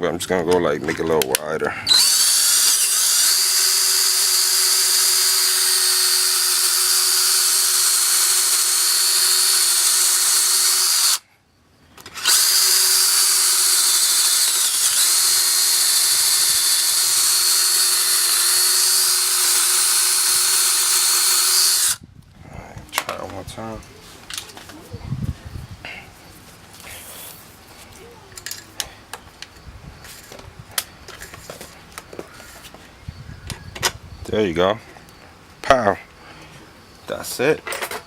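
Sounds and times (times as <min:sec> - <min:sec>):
power drill running: 0:01.8 - 0:11.2, 0:12.1 - 0:22.0.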